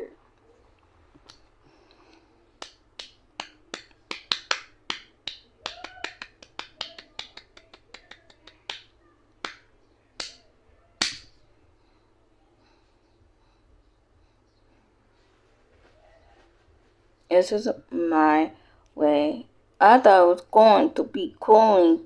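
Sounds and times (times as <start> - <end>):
sharp snapping clicks: 2.6 - 10.4, 11.0 - 11.3.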